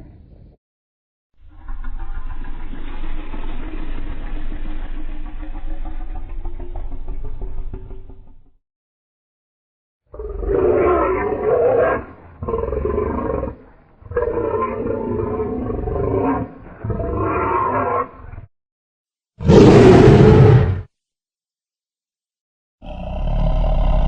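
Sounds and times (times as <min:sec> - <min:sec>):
dinosaur roars: 0:10.1 - 0:18.5, 0:19.4 - 0:20.9, 0:22.8 - 0:24.0.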